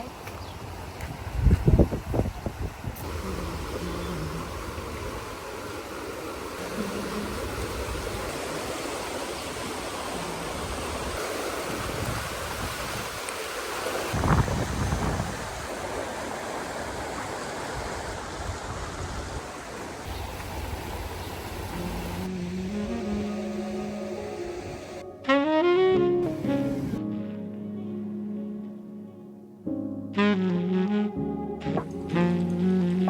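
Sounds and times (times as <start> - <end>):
rushing water: 0.0 - 25.0.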